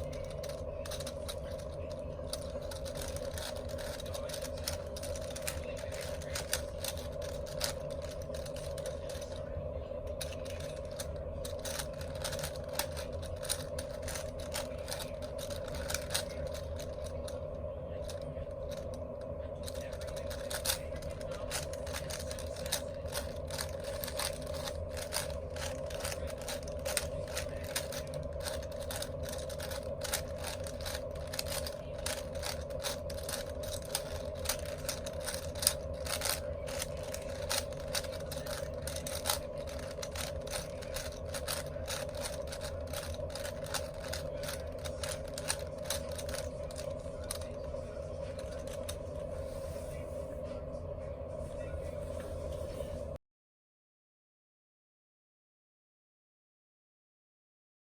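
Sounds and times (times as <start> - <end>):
plastic puzzle cube clicking: 0.0 - 1.6, 2.3 - 9.3, 10.2 - 17.1, 20.0 - 20.8, 21.5 - 47.5
steady low hum: 0.0 - 53.2.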